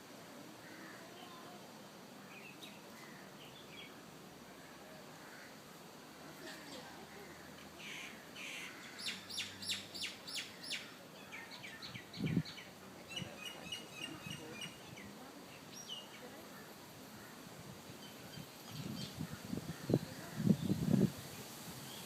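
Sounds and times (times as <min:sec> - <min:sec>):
birds calling: 0:06.6 - 0:17.4.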